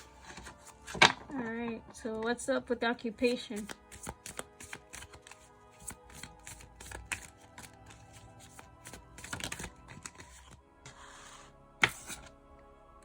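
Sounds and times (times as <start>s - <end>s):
quiet background music: 0.0s - 13.0s
cards being shuffled: 3.2s - 11.0s, 11.8s - 12.3s.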